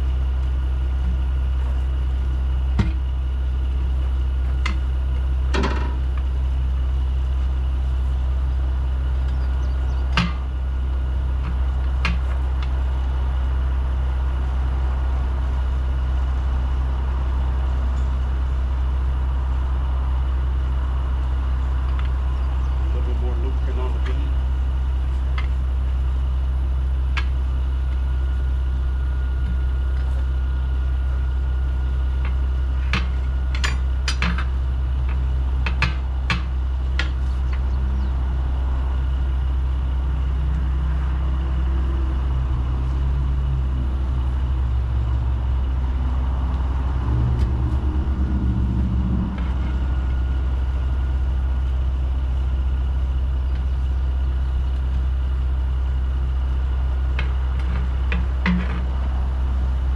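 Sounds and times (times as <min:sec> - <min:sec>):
diesel engine idling: 0:00.0 - 0:59.9
tire irons striking wheel rim: 0:10.1 - 0:10.5, 0:32.2 - 0:37.8, 0:57.1 - 0:59.1.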